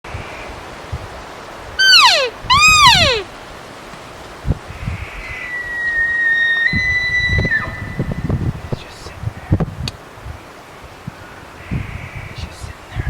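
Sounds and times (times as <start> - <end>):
elk mews sliding down: 1.8 - 3.3
long high elk whistle: 1.8 - 3.3, 5.4 - 8.0.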